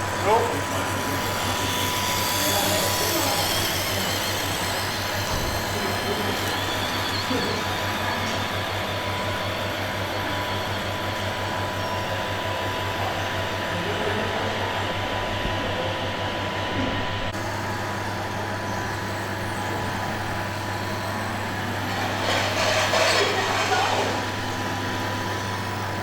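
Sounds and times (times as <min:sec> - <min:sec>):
high whine: 0:00.0 - 0:13.6
model engine rumble: 0:00.0 - 0:26.0.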